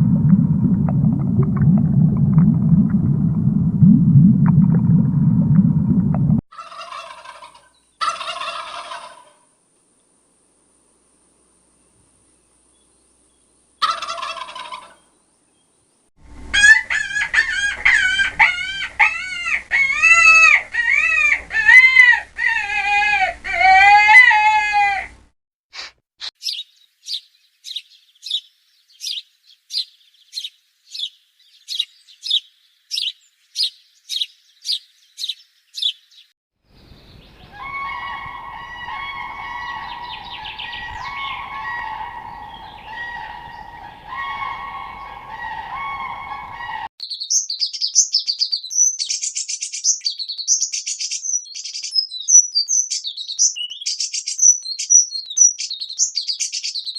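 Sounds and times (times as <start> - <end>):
domestic fowl calling: 6.5 - 9.5, 13.8 - 15.1, 16.5 - 25.2, 37.4 - 46.9.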